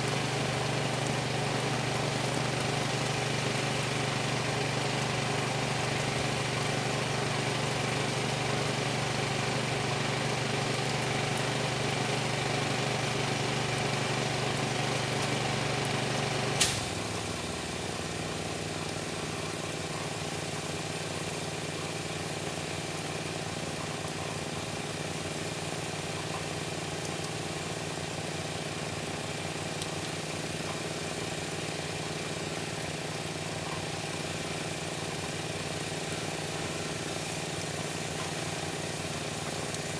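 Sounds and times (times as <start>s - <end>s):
pressure washer engine running: 0.0s - 39.9s.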